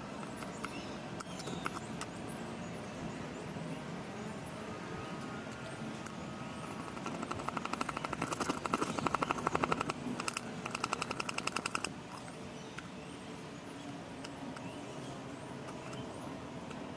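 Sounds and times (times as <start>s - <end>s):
rapid rhythmic rattling: 6.0s - 12.3s.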